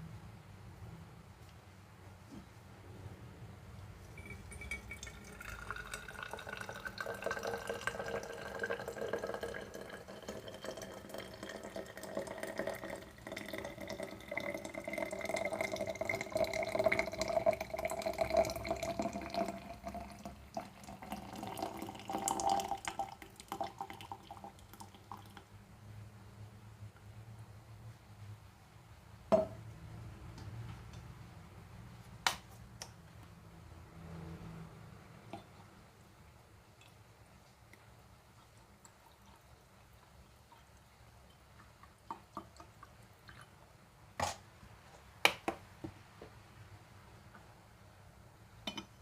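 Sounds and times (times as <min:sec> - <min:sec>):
water pouring into a vessel: 0:04.2 - 0:25.4.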